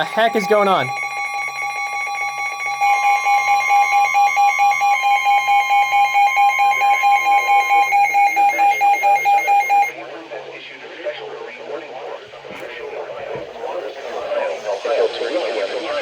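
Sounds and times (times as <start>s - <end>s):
pulsing alert beeps: 0.0s - 9.9s
steady alarm tone: 0.0s - 10.4s.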